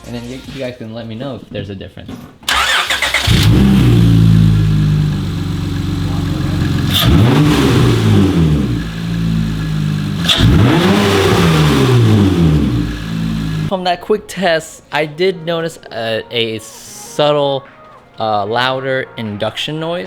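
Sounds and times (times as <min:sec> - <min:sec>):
car engine idling: 0:02.5 - 0:13.7
engine revving: 0:02.5 - 0:13.7.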